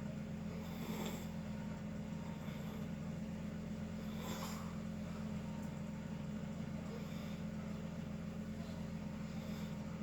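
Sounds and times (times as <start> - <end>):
low machine hum: 0.0 - 10.0
sleeping person breathing: 0.4 - 3.2, 3.8 - 5.0, 6.8 - 7.8, 9.1 - 10.0.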